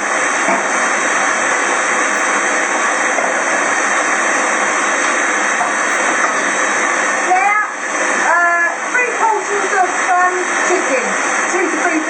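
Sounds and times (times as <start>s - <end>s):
loud rushing hiss: 0.0s - 8.4s.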